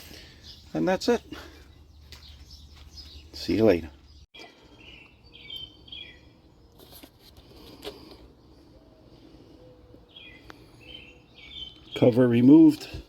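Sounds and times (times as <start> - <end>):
small bird chirping: 0.1 - 7.1, 9.5 - 12.8.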